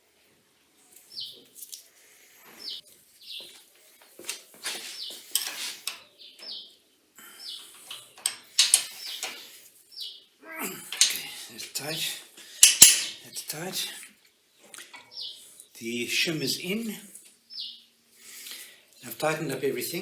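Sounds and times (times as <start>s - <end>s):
metal tools clinking and scraping: 4.2s - 6.1s, 7.5s - 9.6s, 10.8s - 11.5s, 12.6s - 13.2s.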